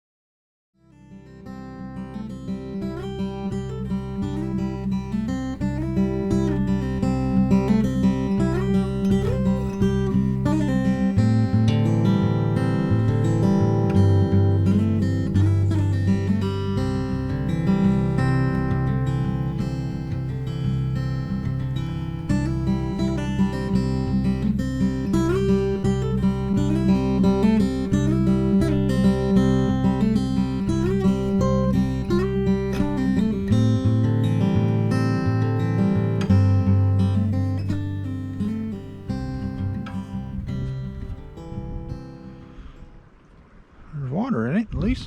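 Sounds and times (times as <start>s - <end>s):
acoustic guitar: 0.8s - 43.8s
bass line: 6.0s - 41.2s.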